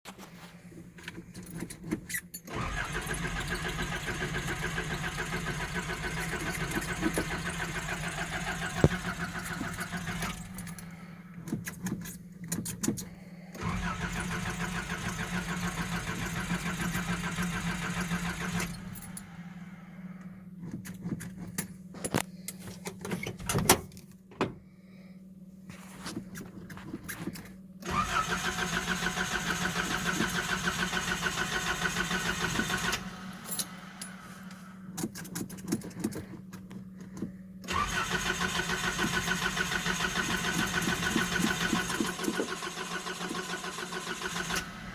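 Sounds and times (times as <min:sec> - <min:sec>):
starter cranking engine: 0:01.0 - 0:19.6, 0:27.8 - 0:34.2, 0:35.0 - 0:44.9.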